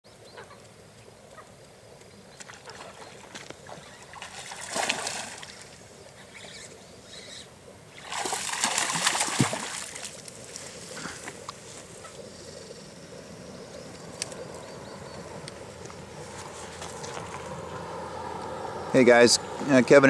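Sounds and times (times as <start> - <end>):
water splashing: 2.4 - 5.8, 7.9 - 12.3.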